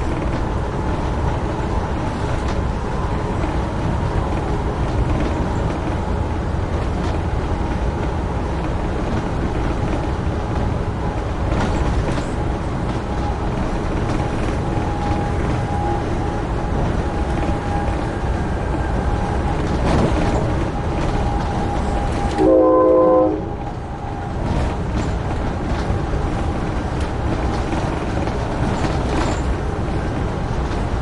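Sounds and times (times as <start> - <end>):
train rumble and rail clicks: 0.0 - 31.0
train horn chord: 22.3 - 23.6.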